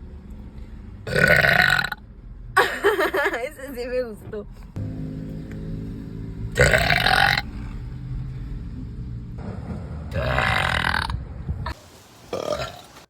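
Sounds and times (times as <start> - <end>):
girl burping loudly: 1.1 - 2.0, 6.6 - 7.7, 10.2 - 11.1.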